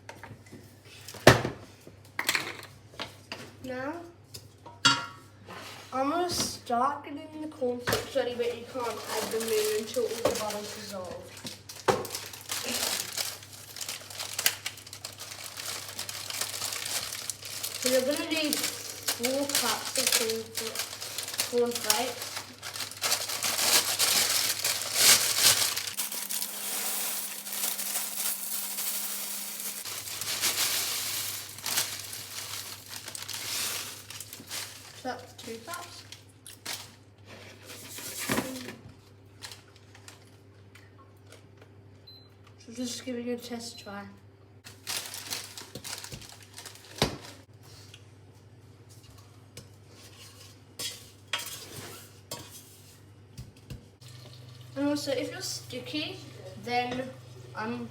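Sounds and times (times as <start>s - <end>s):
plastic bag rustling: 8.1s - 37.0s, 44.6s - 47.5s
cereal flakes rattling into a cup: 8.8s - 37.0s.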